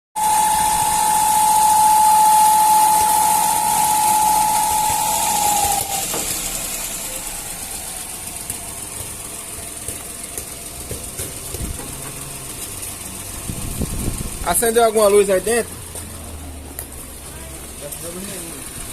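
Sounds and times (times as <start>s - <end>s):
high whistle: 0.2s - 7.6s
car engine running: 0.2s - 18.9s.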